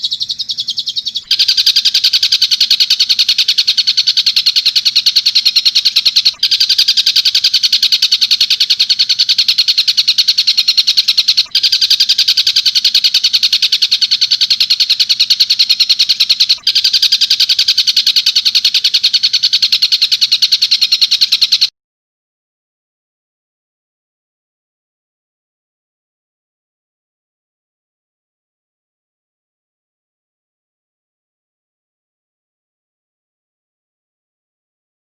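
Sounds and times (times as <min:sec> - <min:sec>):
bird high chattering call: 0:00.0 - 0:21.7.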